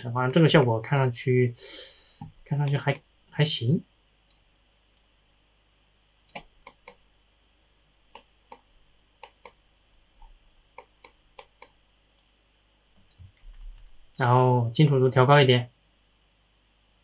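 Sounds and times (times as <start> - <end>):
mouse and keyboard clicking: 6.3 - 7.0, 8.1 - 9.6.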